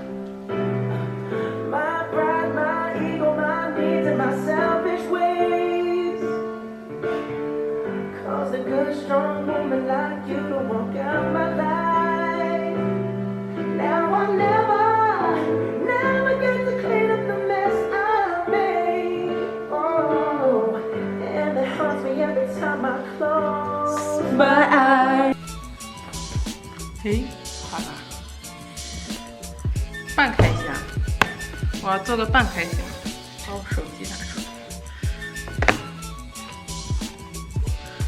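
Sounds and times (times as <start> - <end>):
woman singing: 1.0 - 6.4, 8.2 - 12.9, 13.8 - 25.4, 30.2 - 36.0
instrumental accompaniment: 29.8 - 37.6.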